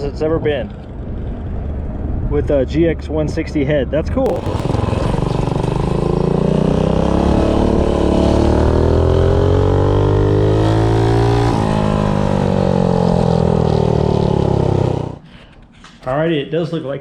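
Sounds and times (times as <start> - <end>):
small engine running: 4.3 - 9.4.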